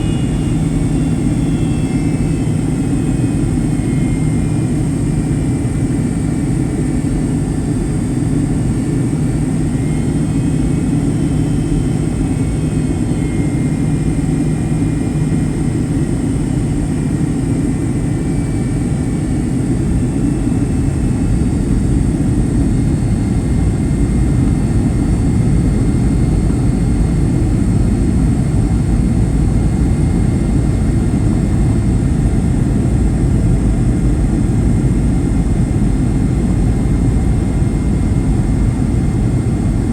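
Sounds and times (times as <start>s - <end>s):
airplane cabin engine roar: 0.0s - 39.9s
faint high whine: 0.0s - 39.9s.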